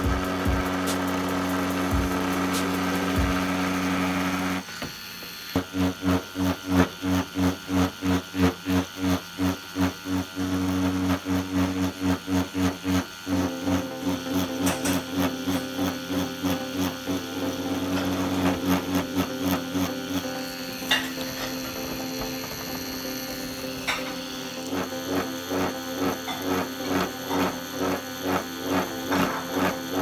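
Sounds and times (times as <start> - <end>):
tattoo pen buzzing: 0.0 - 30.0.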